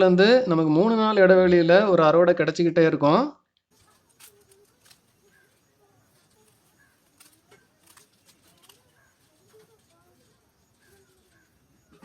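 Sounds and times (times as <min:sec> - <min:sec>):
soft bird chirps: 0:03.4 - 0:12.0.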